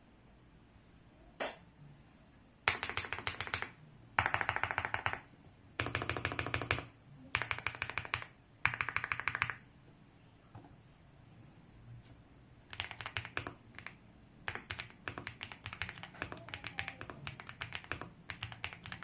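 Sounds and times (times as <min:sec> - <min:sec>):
mechanical keyboard typing: 0:02.7 - 0:09.6, 0:12.7 - 0:19.0.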